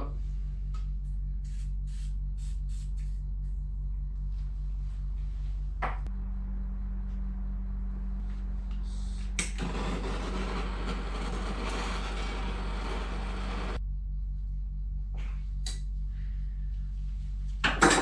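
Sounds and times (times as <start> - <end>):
constant low hum: 0.0 - 18.0
steady hiss: 9.6 - 13.8.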